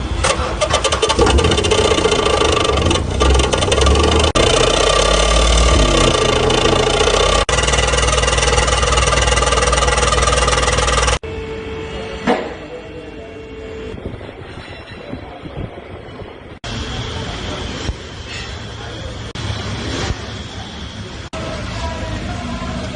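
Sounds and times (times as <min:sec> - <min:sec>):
loud exhaust noise: 0:00.0 - 0:14.6, 0:16.4 - 0:22.9
car engine running: 0:00.8 - 0:11.2.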